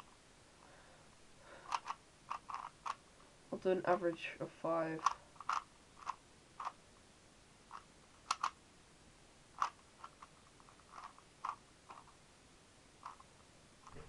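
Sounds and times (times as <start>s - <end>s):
speed cube plastic clicks: 1.6s - 3.0s, 5.0s - 6.8s, 7.7s - 8.6s, 9.5s - 12.2s, 13.0s - 14.0s.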